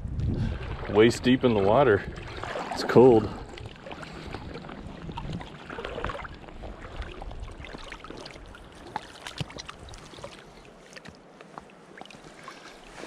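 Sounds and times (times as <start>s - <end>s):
water splashing from wading: 0.4s - 13.0s.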